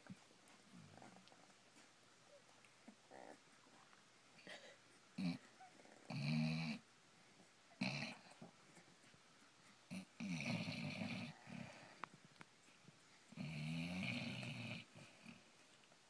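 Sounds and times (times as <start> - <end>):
dog snoring and snorting: 5.2 - 6.8, 7.8 - 8.4, 9.9 - 12.0, 13.3 - 15.4.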